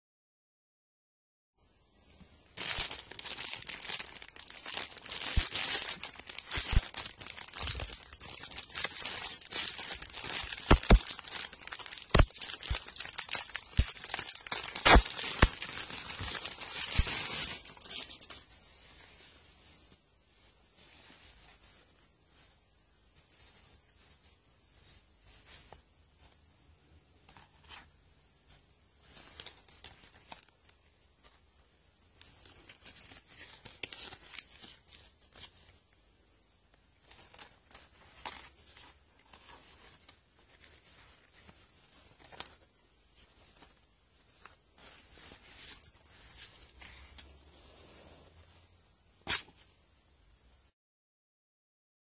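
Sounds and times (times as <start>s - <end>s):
packaging crinkling and tearing: 2.6s - 18.4s, 29.1s - 31.4s, 32.2s - 35.8s, 37.0s - 47.3s.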